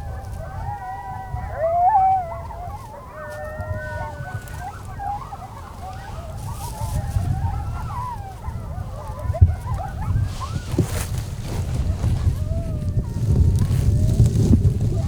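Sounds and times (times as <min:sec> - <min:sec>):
coyotes howling and yipping: 0:00.0 - 0:15.0.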